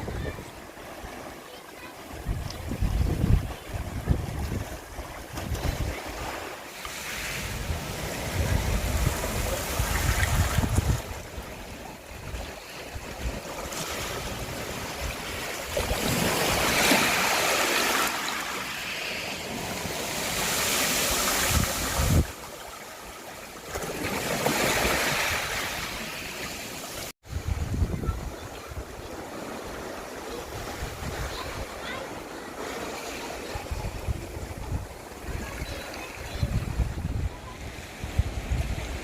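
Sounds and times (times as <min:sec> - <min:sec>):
wind buffeting microphone: 0:00.0 - 0:00.6, 0:02.1 - 0:06.4, 0:07.4 - 0:16.7, 0:21.4 - 0:22.3, 0:27.2 - 0:29.0, 0:33.5 - 0:39.0
sea waves breaking: 0:00.0 - 0:39.0.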